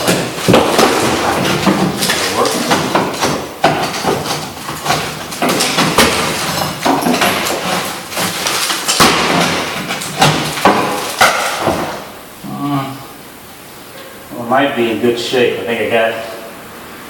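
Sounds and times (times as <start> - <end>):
hammer striking wood: 0.0 - 7.6, 8.9 - 12.0
scraping and knocking: 0.0 - 12.1.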